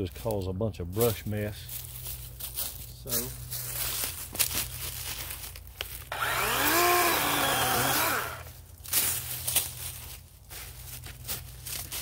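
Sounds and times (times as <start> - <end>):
brush crackling and snapping: 1.0 - 12.0
battery chainsaw revving: 6.1 - 8.5.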